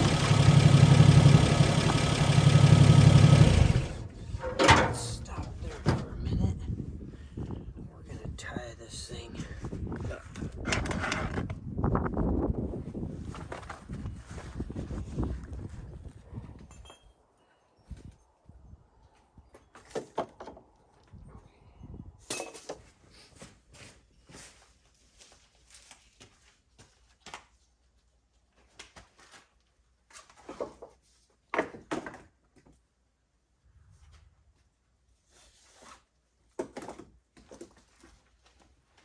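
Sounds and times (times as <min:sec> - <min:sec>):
objects knocking and clunking: 0:00.0 - 0:06.3.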